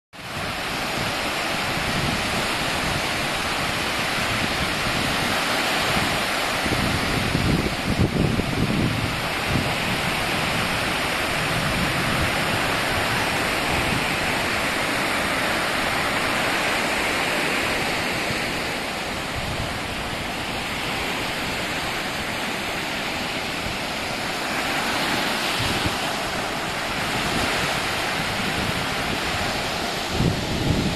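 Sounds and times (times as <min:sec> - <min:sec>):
sea waves washing onto beach: 0:00.2 - 0:30.9.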